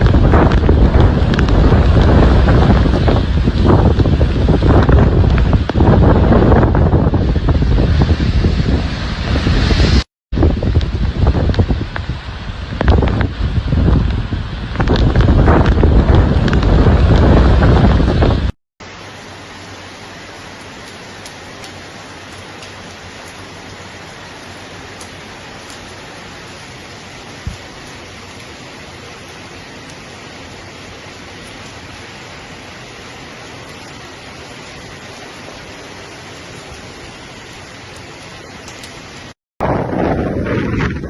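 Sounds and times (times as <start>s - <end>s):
hiss of heavy water: 0.0s - 10.1s, 18.8s - 39.4s.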